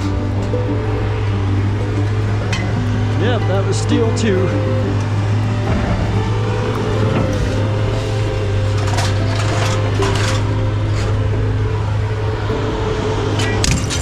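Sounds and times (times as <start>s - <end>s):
scrap metal clanking and rattling: 0.0s - 11.2s
steady low hum: 0.0s - 14.0s.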